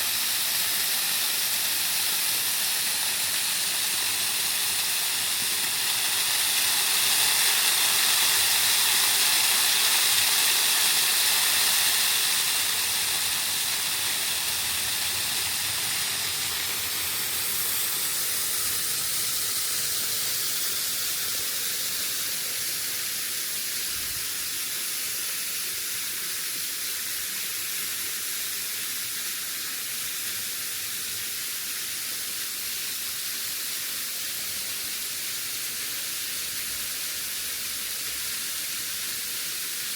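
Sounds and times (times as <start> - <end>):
waterfall rushing: 0.0 - 21.5.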